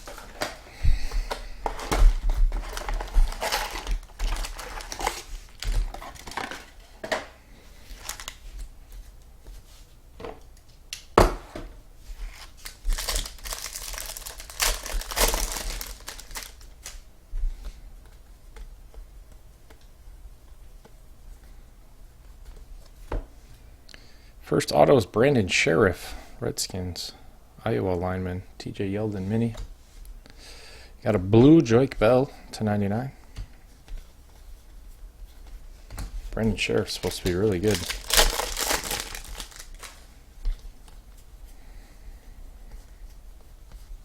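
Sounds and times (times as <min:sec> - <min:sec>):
wrappers crinkling and tearing: 0:01.7 - 0:06.8, 0:07.9 - 0:08.5, 0:12.3 - 0:17.0, 0:36.8 - 0:40.1.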